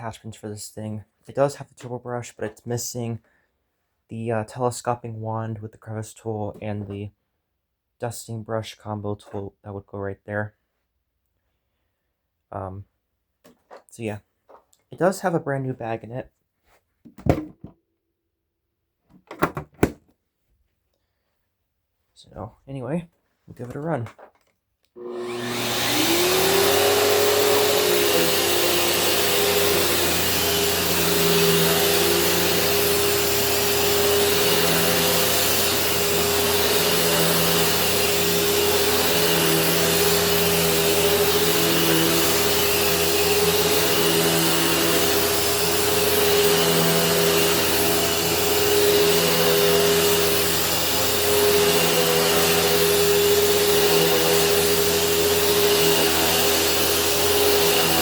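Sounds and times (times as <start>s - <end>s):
vacuum cleaner motor whining: 25.0s - 58.0s.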